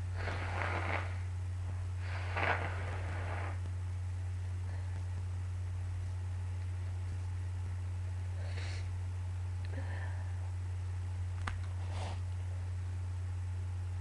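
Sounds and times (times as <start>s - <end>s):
nose blowing: 0.0s - 1.3s, 2.0s - 3.7s
low electrical hum: 0.0s - 14.0s.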